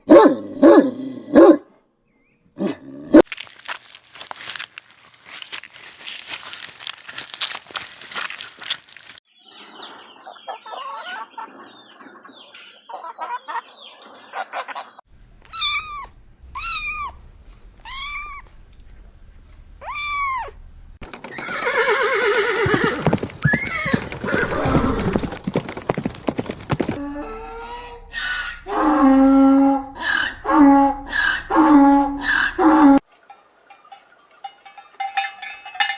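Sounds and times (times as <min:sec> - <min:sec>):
loud rough animal call: 0:27.0 - 0:33.0.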